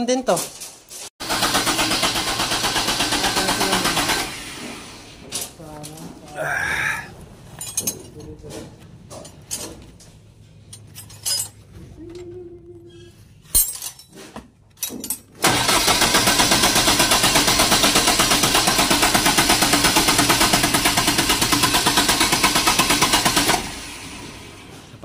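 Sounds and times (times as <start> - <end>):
diesel generator running: 1.2 - 7.4, 15.4 - 25.0.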